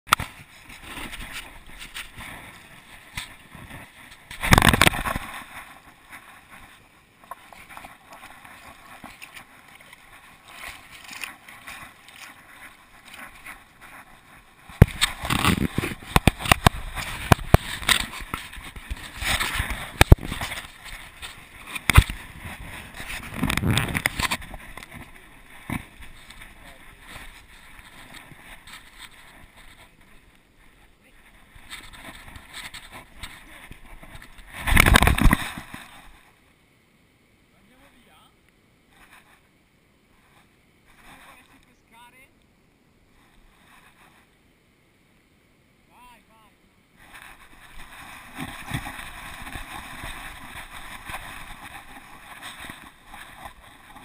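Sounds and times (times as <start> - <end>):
camera rubbing and knocking: 0.1 - 30.2, 31.2 - 36.1, 38.9 - 39.5, 43.2 - 44.3, 47.0 - 54.0.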